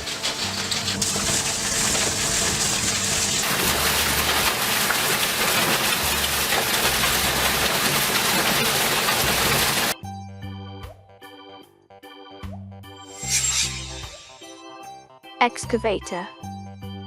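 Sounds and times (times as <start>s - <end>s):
background music bass line: 10.0s - 17.0s.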